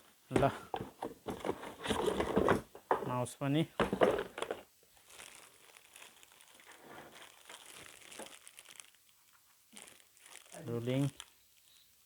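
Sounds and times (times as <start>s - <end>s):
plastic packaging crinkling: 3.8s - 11.9s.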